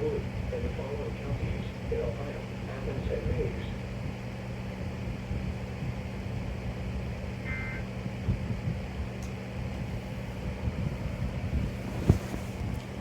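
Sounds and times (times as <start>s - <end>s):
low electrical hum and hiss: 0.0s - 13.0s
high two-tone data warble: 7.4s - 7.9s.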